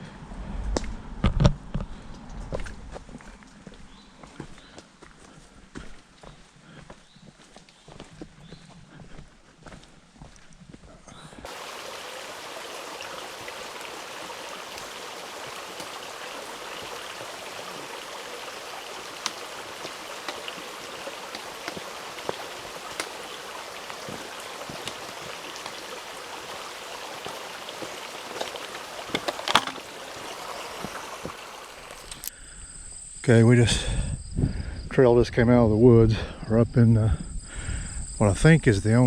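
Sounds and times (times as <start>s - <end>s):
steady watery hiss: 11.4s - 34.2s.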